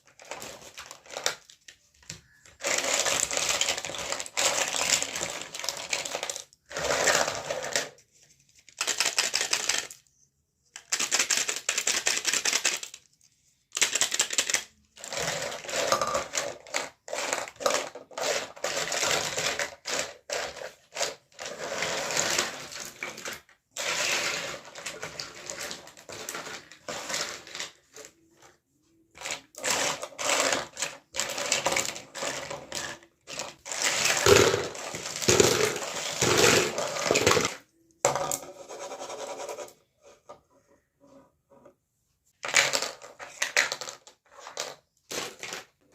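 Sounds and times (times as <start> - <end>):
plastic toy clicking and rattling: 2.2 - 8.0, 8.6 - 10.0, 10.7 - 13.1, 13.7 - 27.9, 29.2 - 37.6.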